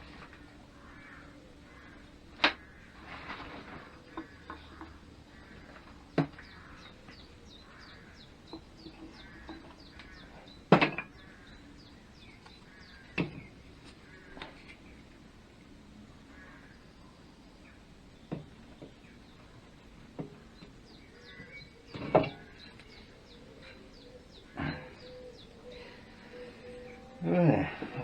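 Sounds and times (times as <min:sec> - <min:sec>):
wooden and metal knocks: 0:05.6 - 0:06.9, 0:08.5 - 0:11.4, 0:13.1 - 0:13.6, 0:20.2 - 0:20.7, 0:21.3 - 0:22.6.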